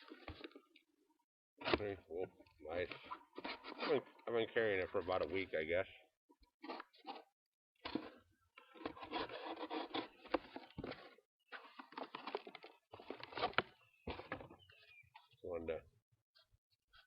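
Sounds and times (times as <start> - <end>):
knife sawing through cardboard: 8.8 - 10.2.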